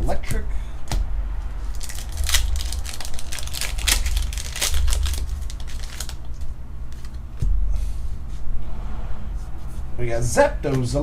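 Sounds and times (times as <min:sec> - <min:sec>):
foil wrapper crinkling: 0:01.7 - 0:07.2
trading cards clicking: 0:01.8 - 0:07.2.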